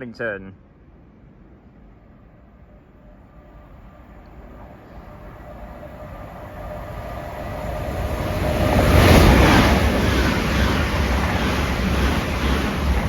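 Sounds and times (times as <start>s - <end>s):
train wheel-on-rail noise: 0.9s - 13.0s.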